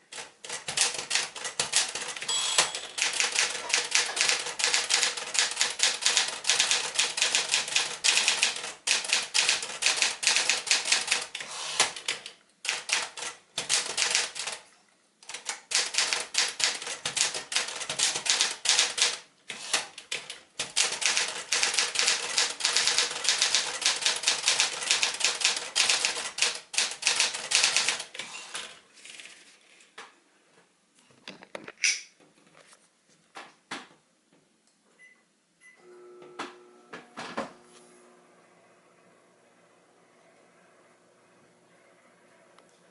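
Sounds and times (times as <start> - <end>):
manual typewriter typing: 0.1 - 14.6, 15.2 - 29.4.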